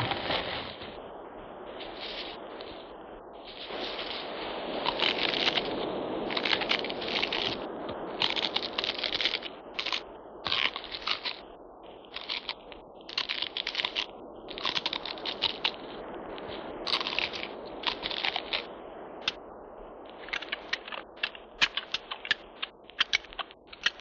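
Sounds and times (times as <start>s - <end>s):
rushing background noise: 0.0s - 24.0s
rapid clicking and crunching: 4.8s - 15.9s, 16.9s - 19.4s, 20.1s - 24.0s.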